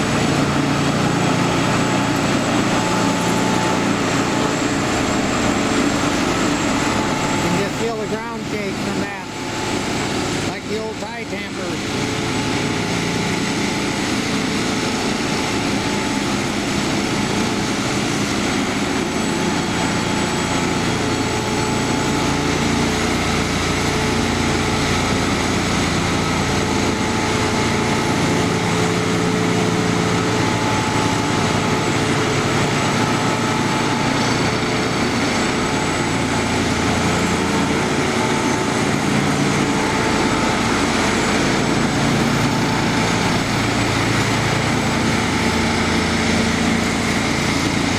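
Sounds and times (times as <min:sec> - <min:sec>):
machine engines humming: 0:00.0 - 0:47.9.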